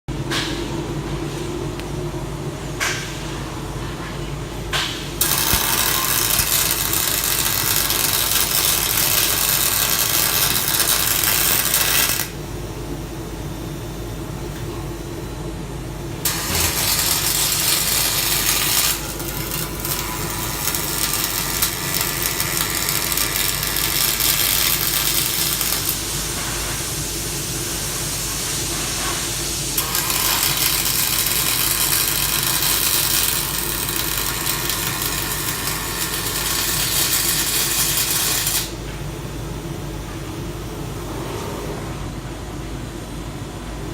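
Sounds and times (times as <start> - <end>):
low machine hum: 0.1 - 43.9
welding arc hissing and crackling: 4.8 - 12.6, 16.0 - 40.0.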